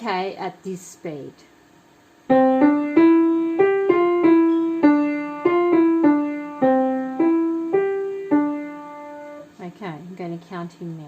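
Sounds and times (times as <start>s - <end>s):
piano melody: 2.3s - 9.5s.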